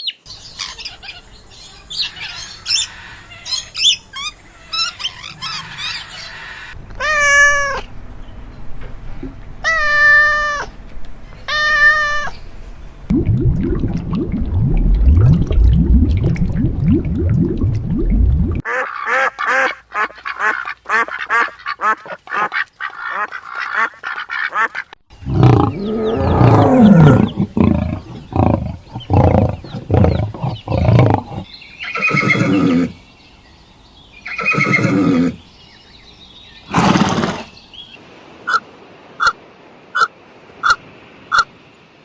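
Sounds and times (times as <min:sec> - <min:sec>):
ducks quacking: 0:18.6 - 0:25.8.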